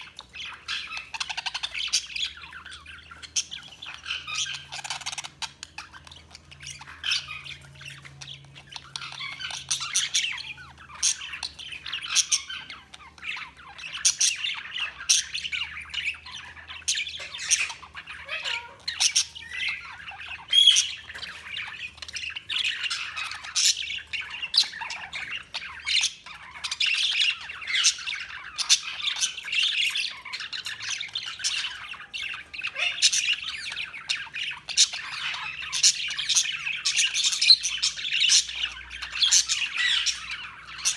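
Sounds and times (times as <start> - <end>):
budgerigars chirping and squawking: 0.0 - 40.9.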